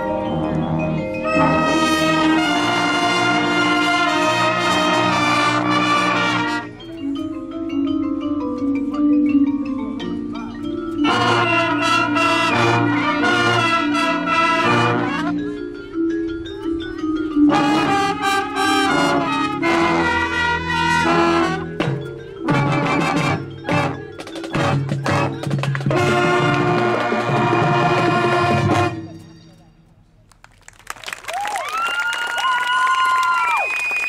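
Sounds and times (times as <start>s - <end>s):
brass chords: 0.0s - 7.1s, 9.9s - 15.6s, 17.4s - 29.5s
mallet percussion: 0.0s - 30.2s.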